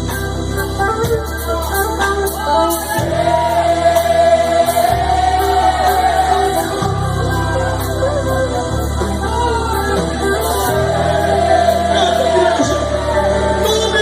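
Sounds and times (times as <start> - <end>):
band playing: 0.0 - 14.0
person singing: 5.4 - 14.0.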